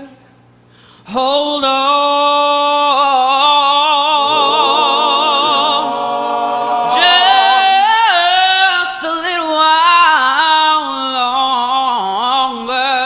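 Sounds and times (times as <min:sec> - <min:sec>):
vocal group singing: 0:04.0 - 0:09.0.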